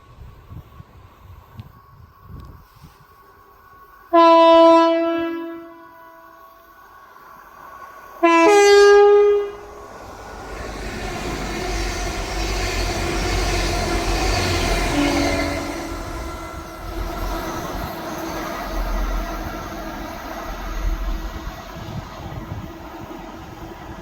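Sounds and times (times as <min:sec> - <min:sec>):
approaching train rumble: 0:00.0 - 0:24.0
train horn blasts: 0:04.1 - 0:06.5, 0:08.2 - 0:09.7, 0:13.8 - 0:16.7.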